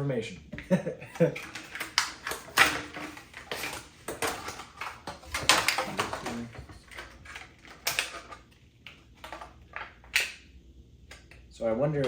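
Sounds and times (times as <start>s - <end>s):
hard plastic toys clicking and tapping: 1.2s - 10.4s.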